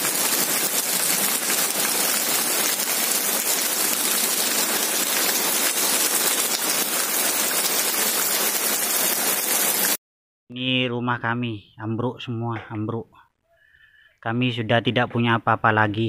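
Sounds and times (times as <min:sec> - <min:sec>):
fine rain pattering: 0:00.0 - 0:10.0
heavy rain hissing: 0:00.0 - 0:10.0.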